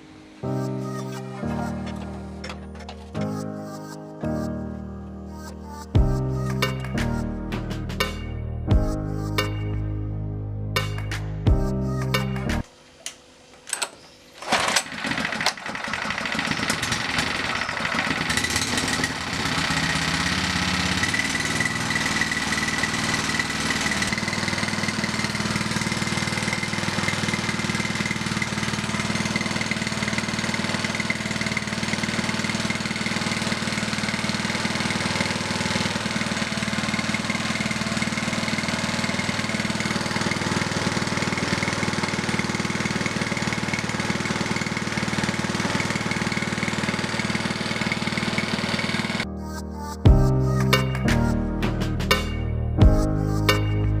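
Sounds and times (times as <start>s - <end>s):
small engine running: 0.9s - 3.4s, 14.4s - 49.3s
small engine pull-starting: 1.0s - 3.3s, 13.6s - 49.2s.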